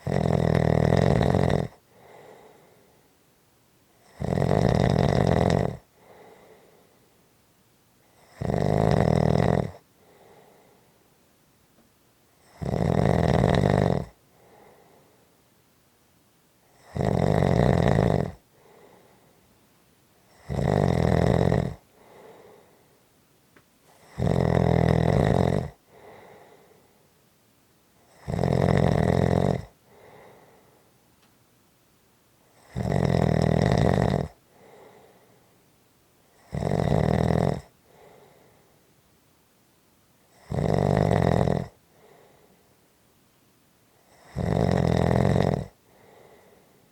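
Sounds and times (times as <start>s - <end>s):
loud snoring: 0.0s - 2.5s, 4.0s - 6.5s, 8.2s - 10.3s, 12.4s - 14.7s, 16.8s - 19.0s, 20.3s - 22.6s, 23.9s - 26.6s, 28.1s - 30.4s, 32.6s - 35.1s, 36.4s - 38.3s, 40.3s - 42.2s, 44.1s - 46.3s
faint breath out: 1.8s - 3.2s, 5.9s - 7.2s, 10.0s - 11.0s, 14.3s - 15.4s, 18.5s - 19.5s, 21.9s - 23.1s, 25.8s - 27.1s, 29.8s - 31.0s, 34.4s - 35.7s, 37.8s - 38.9s, 41.9s - 42.8s, 45.8s - 46.9s.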